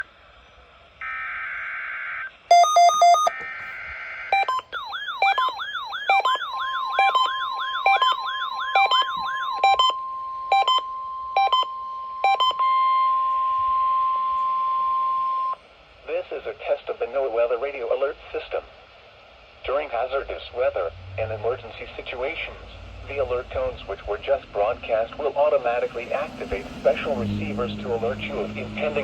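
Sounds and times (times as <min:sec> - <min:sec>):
warbling siren-like alarm: 0:01.0 - 0:14.9
electronic beeps: 0:02.5 - 0:15.6.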